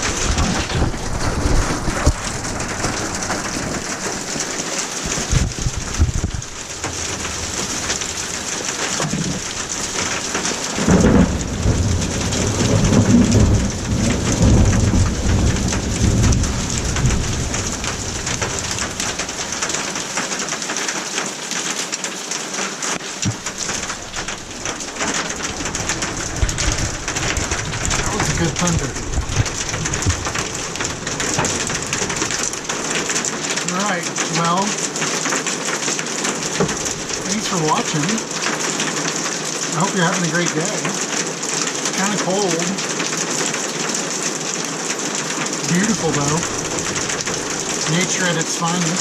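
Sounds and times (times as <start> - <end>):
low rumble of thunder: 0.0 - 20.2, 23.2 - 33.3, 45.5 - 48.0
rain and hail pattering: 0.0 - 49.0.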